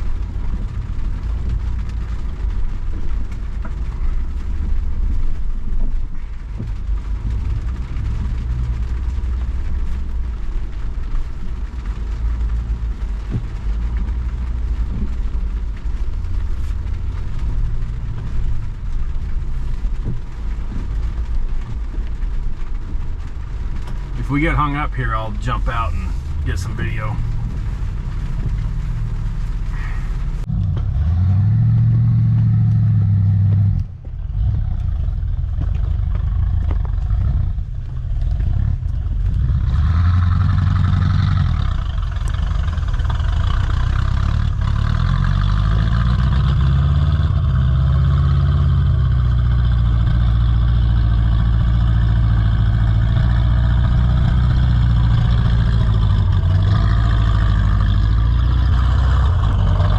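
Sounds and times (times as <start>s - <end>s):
truck engine revving under load: 24.3s - 59.9s.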